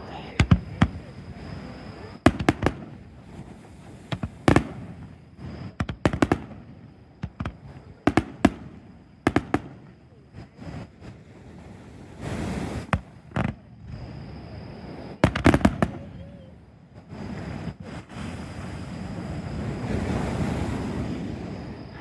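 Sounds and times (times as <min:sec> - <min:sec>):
fireworks bursting with bangs: 0:00.1 - 0:13.7, 0:15.2 - 0:19.1.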